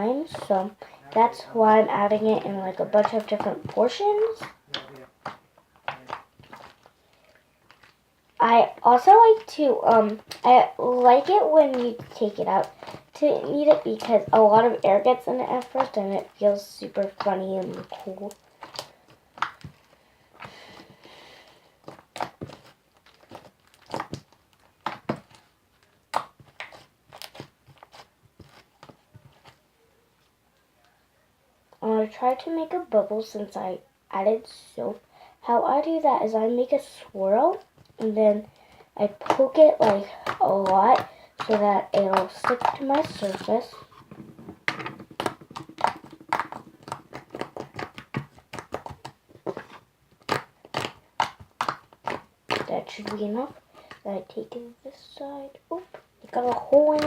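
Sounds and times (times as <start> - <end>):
slime crackling and popping: 0.0 - 20.5, 21.8 - 29.6, 37.1 - 54.7, 55.7 - 57.0
slime clicking and snapping: 11.2 - 12.0, 17.1 - 19.8, 26.1 - 28.6, 50.2 - 53.2.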